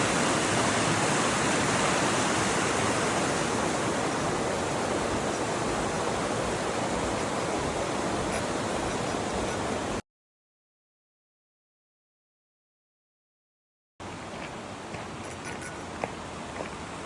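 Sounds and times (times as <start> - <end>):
creek water rushing: 0.0 - 10.0, 14.0 - 17.0.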